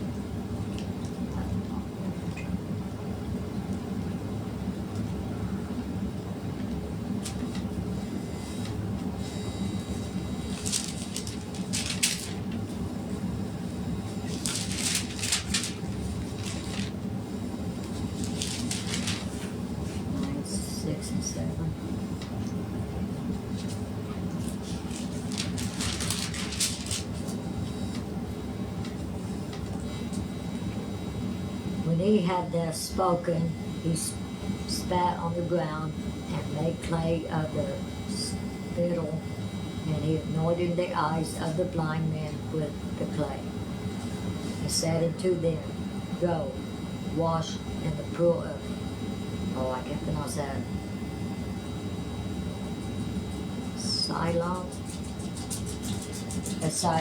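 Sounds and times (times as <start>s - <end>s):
low room hum: 0.0s - 57.0s
crisp rustles: 10.4s - 12.6s, 14.2s - 17.0s, 17.8s - 20.0s, 24.4s - 27.4s.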